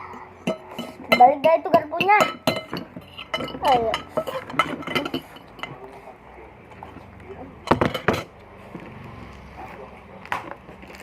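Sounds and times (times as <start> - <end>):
fork clinking against bowl: 0.4 - 5.8.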